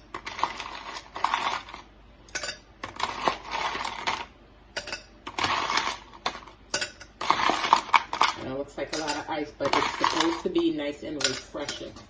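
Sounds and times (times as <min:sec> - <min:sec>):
ice cubes clinking in a cup: 0:00.1 - 0:01.9, 0:02.8 - 0:04.3, 0:05.3 - 0:06.4, 0:07.2 - 0:10.6.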